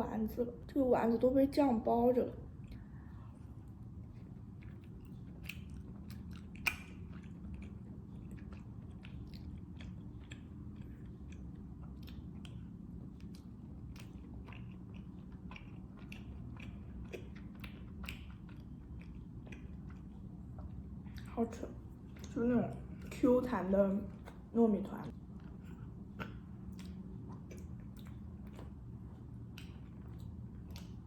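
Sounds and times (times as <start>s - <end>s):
close-miked chewing: 2.2s - 31.0s
wet mouth clicks: 25.6s - 28.8s.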